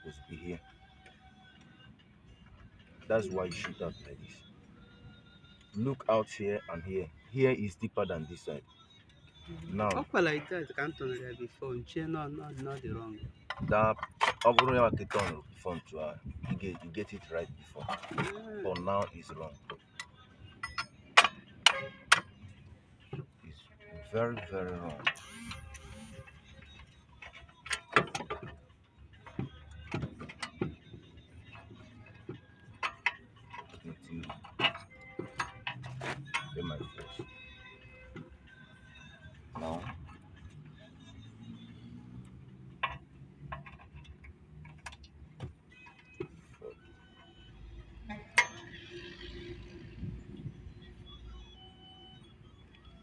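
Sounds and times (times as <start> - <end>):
metallic clicks and knocks: 13.5 - 15.5, 16.4 - 22.4, 24.4 - 37.5, 42.2 - 46.4.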